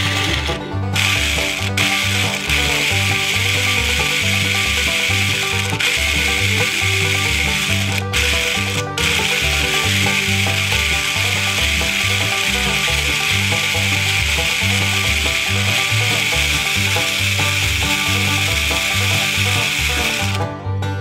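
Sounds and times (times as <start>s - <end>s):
loud rasping noise: 0.0s - 20.4s
background music with bass: 0.0s - 21.0s.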